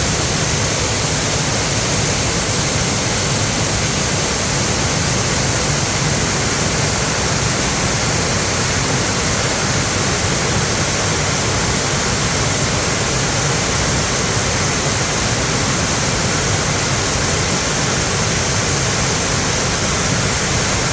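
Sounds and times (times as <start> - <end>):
stream rushing over rocks: 0.0 - 20.9.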